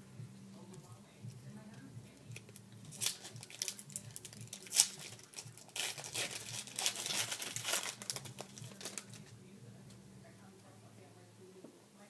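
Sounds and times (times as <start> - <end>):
wrapper tearing and crinkling: 2.4 - 9.3.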